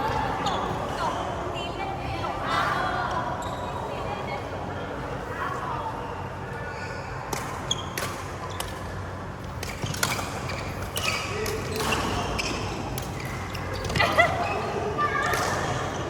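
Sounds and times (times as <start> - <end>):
sneakers squeaking on court: 3.4 - 3.9, 6.7 - 16.0.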